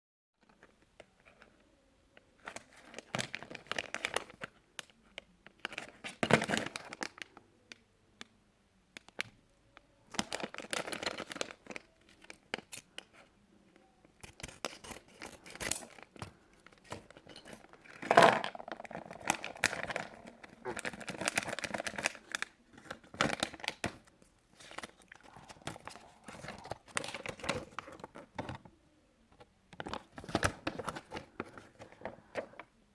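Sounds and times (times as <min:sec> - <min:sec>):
plastic bag crinkling and tearing: 0:10.1 - 0:13.1, 0:14.2 - 0:28.1.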